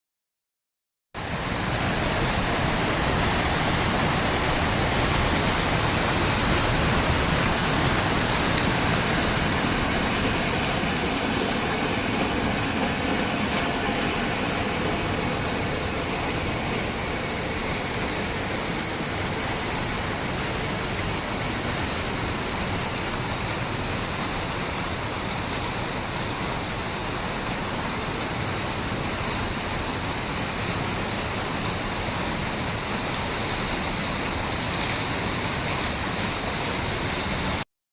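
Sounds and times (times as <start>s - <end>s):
waterfall rushing: 1.2s - 37.6s.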